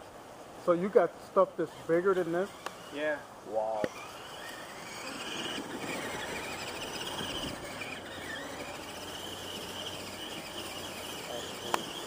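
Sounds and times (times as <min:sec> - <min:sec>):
electric toy truck motor whining: 0:02.0 - 0:03.2, 0:03.8 - 0:12.0.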